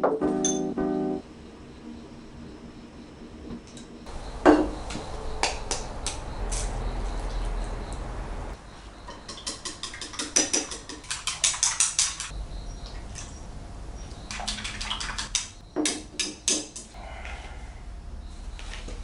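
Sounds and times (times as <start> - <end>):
utensils clicking against dishes: 9.2 - 12.3.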